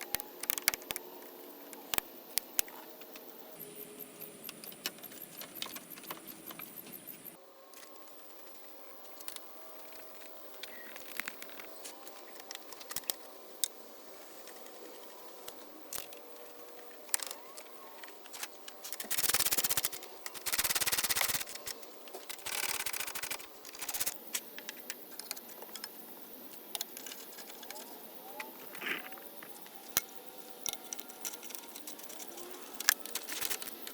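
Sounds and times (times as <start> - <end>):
rapid ratchet clicking: 19.0 - 21.6, 22.3 - 24.2.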